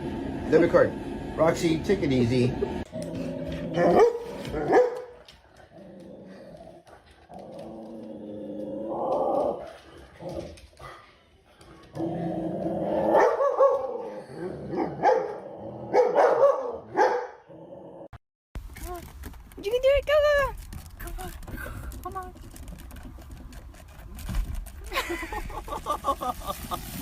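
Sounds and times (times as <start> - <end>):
dog barking: 3.8 - 5.1, 13.1 - 14.1, 14.8 - 17.4.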